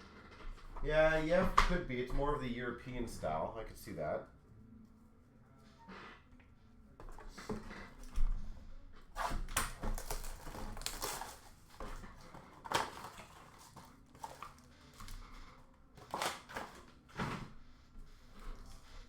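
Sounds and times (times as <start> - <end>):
cards and foil wrappers rustling: 9.2 - 17.2.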